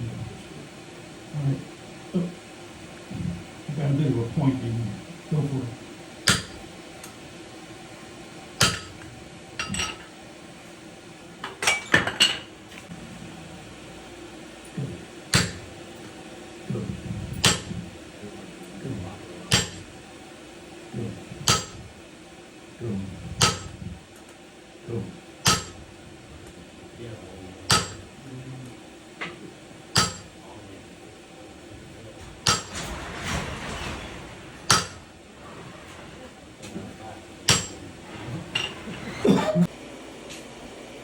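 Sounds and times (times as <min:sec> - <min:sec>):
hammer striking hot iron on anvil: 0:06.2 - 0:06.7, 0:08.6 - 0:09.0, 0:09.6 - 0:10.1, 0:14.8 - 0:15.8, 0:17.3 - 0:17.9, 0:19.5 - 0:19.9, 0:21.4 - 0:21.9, 0:23.4 - 0:24.0, 0:25.4 - 0:25.9, 0:27.7 - 0:28.2, 0:29.9 - 0:30.4, 0:32.4 - 0:33.4, 0:34.6 - 0:35.1, 0:37.4 - 0:37.9.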